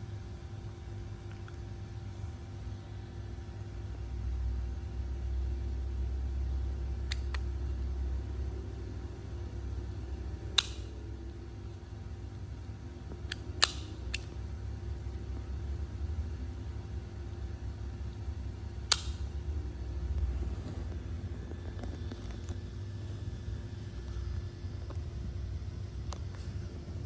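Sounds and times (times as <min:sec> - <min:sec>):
low mechanical hum: 0:00.0 - 0:27.0
sharp clicks: 0:10.6 - 0:10.9, 0:13.3 - 0:14.3, 0:18.9 - 0:19.3.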